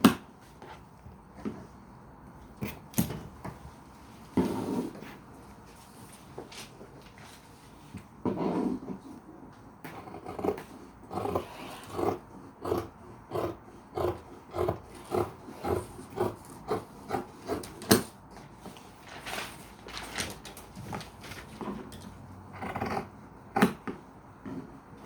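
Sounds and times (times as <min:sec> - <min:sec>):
fabric rustling: 0:18.7 - 0:21.8.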